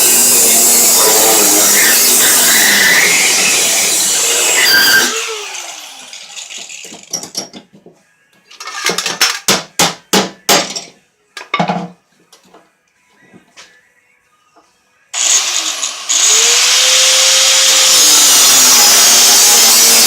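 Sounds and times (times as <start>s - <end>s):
angle grinder spinning down: 0.0s - 6.8s, 15.2s - 20.0s
sharp metallic clanks and knocks: 6.6s - 7.8s.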